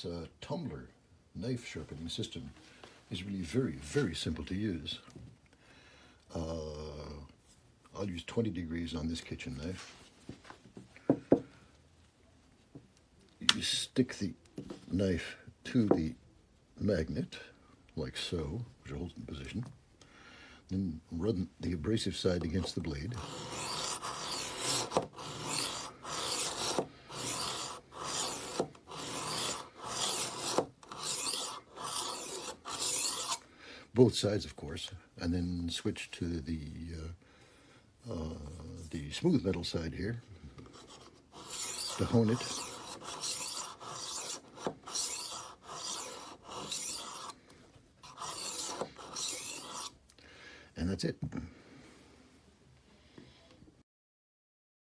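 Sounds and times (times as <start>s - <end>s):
knife sharpener gritty rasp: 22.4s - 33.4s, 40.7s - 50.0s.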